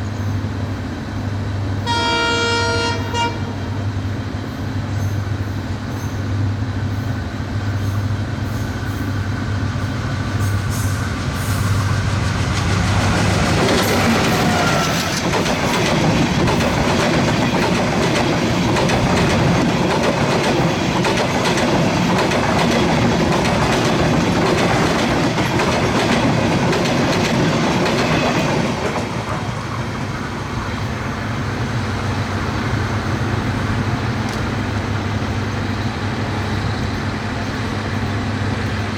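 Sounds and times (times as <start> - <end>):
diesel locomotive engine hum: 0.0 - 38.9
express train passing: 0.0 - 38.9
wheels clacking over rail joints: 10.3 - 30.3.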